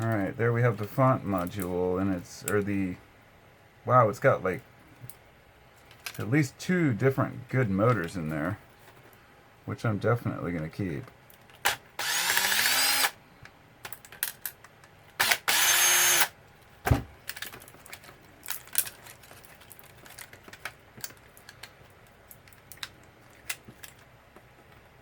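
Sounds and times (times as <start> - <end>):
power driver whining: 11.7 - 13.2, 15.2 - 16.4
thump: 16.8 - 17.1
small clicks and taps of parts: 17.3 - 24.8.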